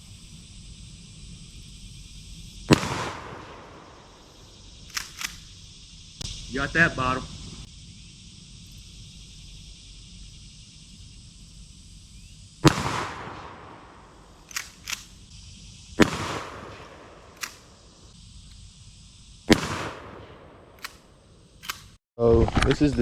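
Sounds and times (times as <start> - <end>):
shotgun shots with echo: 2.7 - 4.2, 12.6 - 15.2, 16.0 - 17.8, 19.5 - 22.0.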